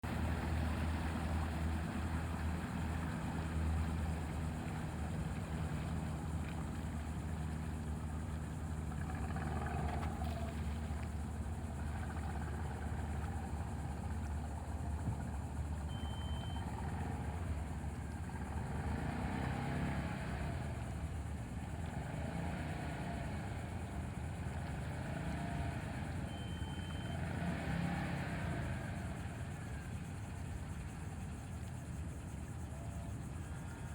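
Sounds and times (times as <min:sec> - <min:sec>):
boat engine running: 0:00.0 - 0:33.9
short high beeps: 0:15.9 - 0:16.6, 0:26.3 - 0:27.2.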